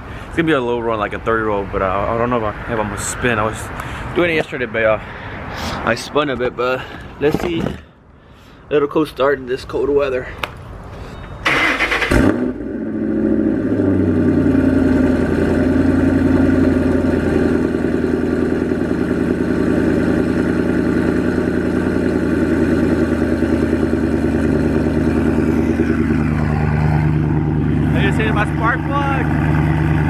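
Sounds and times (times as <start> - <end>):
engine cranking: 11.4 - 12.4
engine revving then idling: 11.5 - 30.0.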